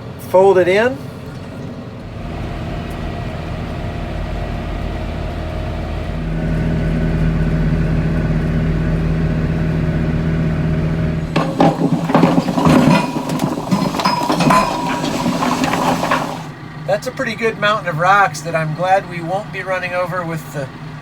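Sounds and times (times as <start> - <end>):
tractor engine revving up: 1.8 - 21.0
steady drone: 2.0 - 11.4
metallic clanking and clattering: 11.3 - 16.6.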